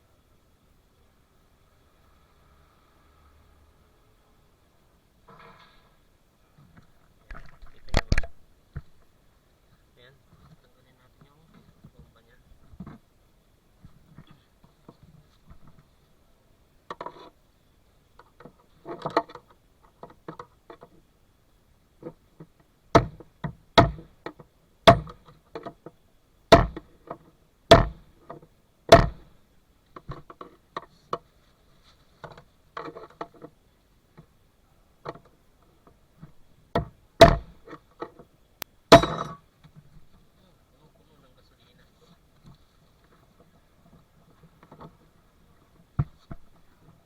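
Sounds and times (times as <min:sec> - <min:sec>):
sharp knocks: 0:22.9 - 0:25.2, 0:26.5 - 0:26.9, 0:27.7 - 0:28.0, 0:28.9 - 0:29.3, 0:36.7 - 0:37.6, 0:38.9 - 0:39.4
tools clinking and rattling: 0:38.9 - 0:39.4.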